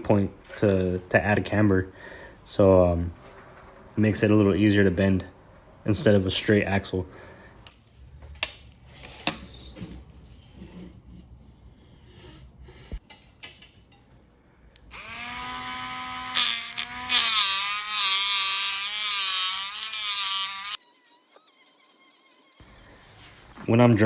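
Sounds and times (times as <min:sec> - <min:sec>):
rotary tool grinding whine: 0:14.9 - 0:24.0.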